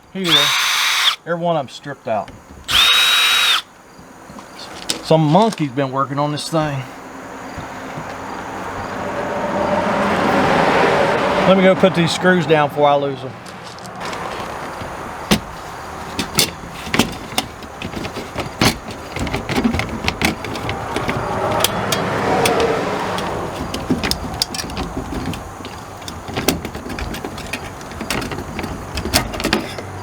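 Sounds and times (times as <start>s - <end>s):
highway traffic noise: 0.0s - 30.0s
vehicle passing: 6.6s - 16.8s, 20.2s - 26.1s
sharp clicks and knocks: 14.0s - 30.0s.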